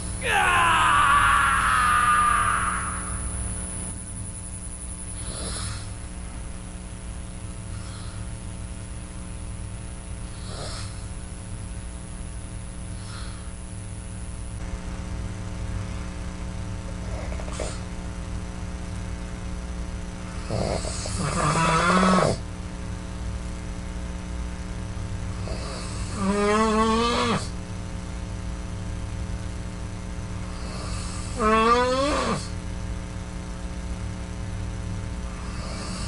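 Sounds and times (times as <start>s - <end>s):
electrical hum: 0.0s - 36.0s
person breathing quietly: 7.6s - 8.4s, 12.9s - 13.6s.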